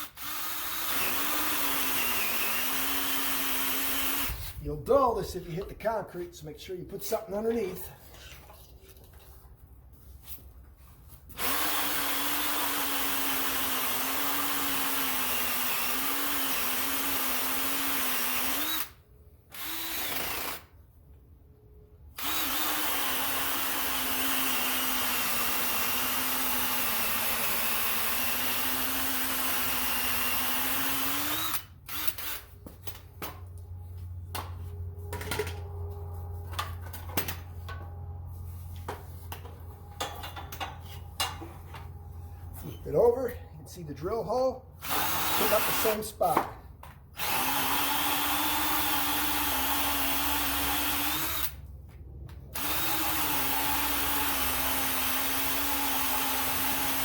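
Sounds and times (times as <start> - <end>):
drill cutting through wood: 0.0 - 4.6, 11.4 - 20.7, 22.2 - 32.5, 44.8 - 46.1, 47.2 - 51.6, 52.5 - 57.0.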